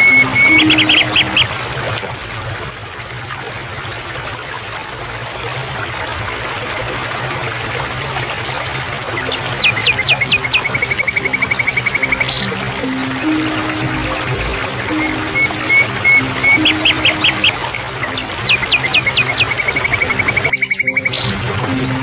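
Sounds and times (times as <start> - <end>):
bird chirping: 0.0 - 1.6, 9.1 - 22.0
water trickling: 0.0 - 22.0.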